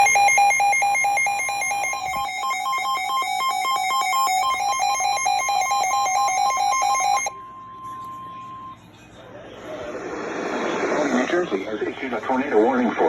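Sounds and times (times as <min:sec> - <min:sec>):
pulsing two-pitch alarm tones: 0:00.0 - 0:07.7.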